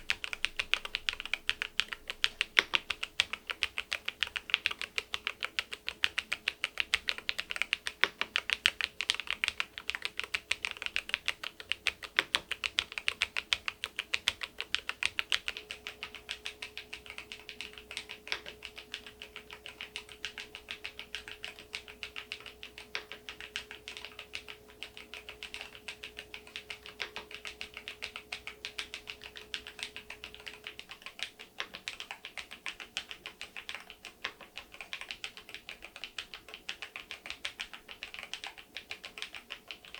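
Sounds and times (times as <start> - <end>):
fast keyboard typing clacks: 0.0 - 39.9.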